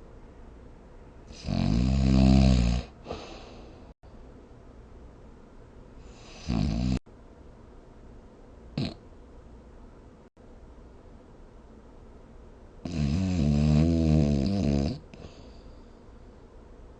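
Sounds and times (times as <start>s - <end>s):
person snoring: 1.3s - 3.7s, 6.1s - 7.0s, 12.9s - 15.4s.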